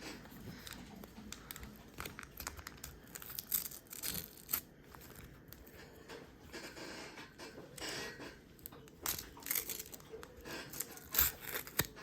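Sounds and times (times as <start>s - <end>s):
foil wrapper crackling: 0.5s - 5.8s, 8.6s - 12.0s.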